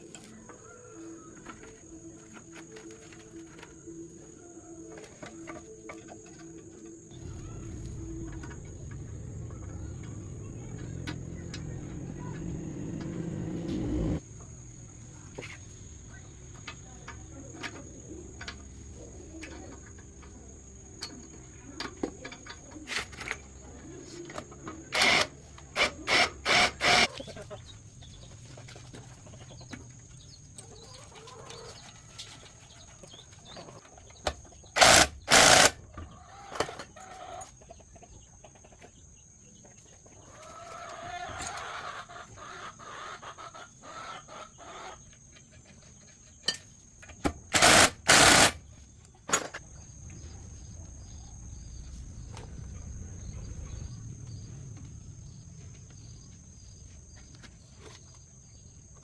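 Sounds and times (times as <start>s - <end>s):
high insect drone: 24.3s - 27.3s.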